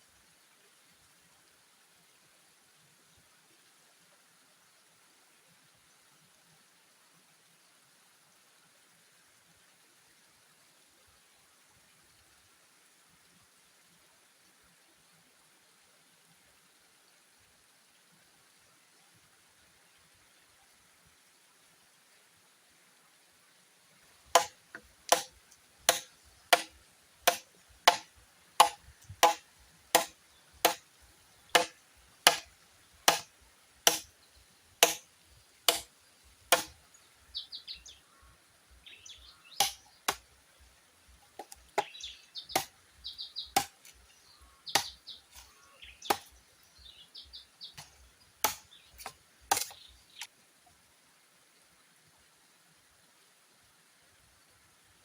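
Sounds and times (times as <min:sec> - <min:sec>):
bamboo cracking: 0:24.4 - 0:25.3, 0:25.9 - 0:26.7, 0:27.3 - 0:29.4, 0:31.5 - 0:33.3
blade chopping into bamboo: 0:24.4 - 0:25.3, 0:25.9 - 0:26.7, 0:27.3 - 0:30.8, 0:31.5 - 0:33.3, 0:33.9 - 0:34.1, 0:34.8 - 0:35.0, 0:35.7 - 0:35.9, 0:36.5 - 0:36.7, 0:39.6 - 0:40.2, 0:42.5 - 0:42.7, 0:43.5 - 0:44.0, 0:44.8 - 0:45.5, 0:46.1 - 0:46.3, 0:48.4 - 0:49.8.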